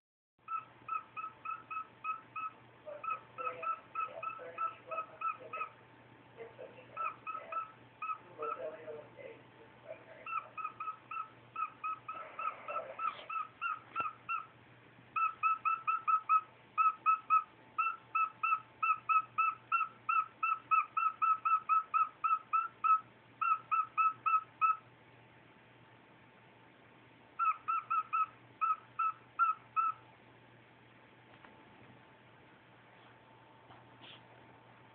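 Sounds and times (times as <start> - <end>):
cockatiel beeping: 0.4 - 5.8, 7.0 - 8.6, 10.2 - 14.5, 15.1 - 24.9, 27.4 - 30.0.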